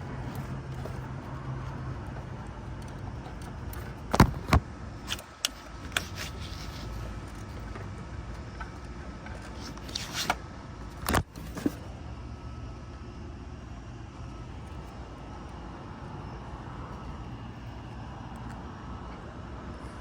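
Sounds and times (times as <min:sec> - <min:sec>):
car engine running: 0:00.0 - 0:09.9
sharp clicks and knocks: 0:00.0 - 0:11.9.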